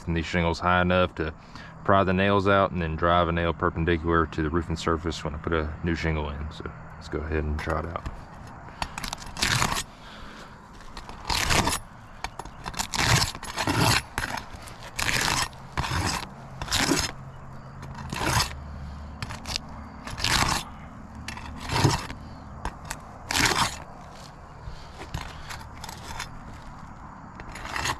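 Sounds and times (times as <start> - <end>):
roofing tool scraping shingles: 7.6 - 27.9.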